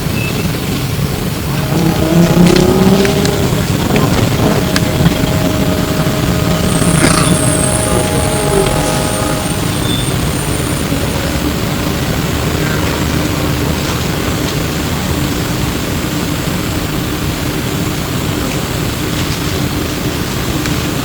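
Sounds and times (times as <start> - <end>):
road rumble inside bus: 0.0 - 21.0
faint steady hum: 1.2 - 14.5.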